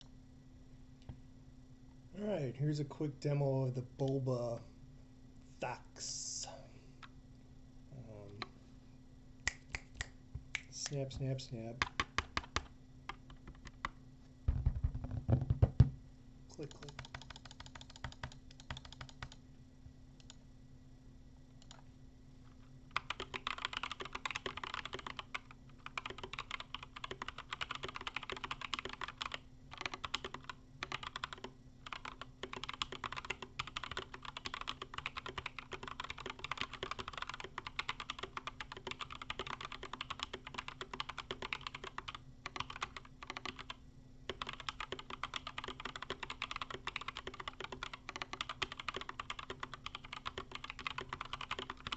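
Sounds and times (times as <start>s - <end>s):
fast mechanical keyboard typing: 11.8s - 13.9s, 16.6s - 19.4s, 22.9s - 51.9s.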